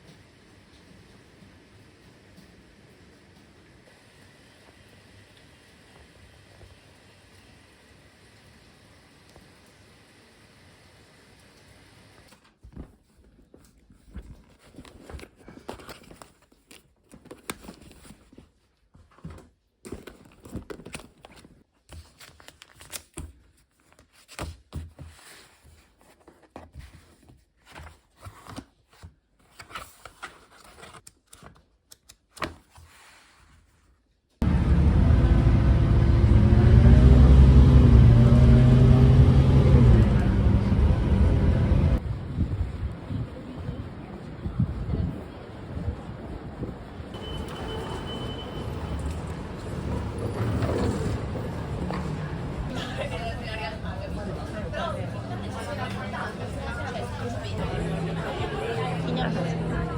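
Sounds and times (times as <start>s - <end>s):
handling rustles and scrapes: 12.4s - 31.1s, 32.5s - 34.1s
vehicle engine running: 34.4s - 42.2s, 48.7s - 52.7s.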